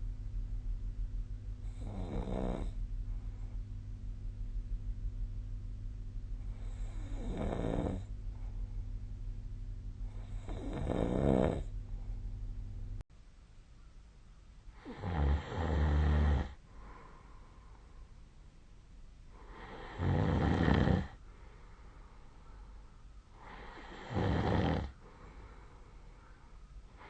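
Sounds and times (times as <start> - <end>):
low steady hum: 0.0 - 24.0, 24.8 - 27.0
person snoring: 1.7 - 2.8, 6.5 - 8.1, 10.1 - 11.7, 14.8 - 16.6, 19.4 - 21.2, 23.4 - 25.0.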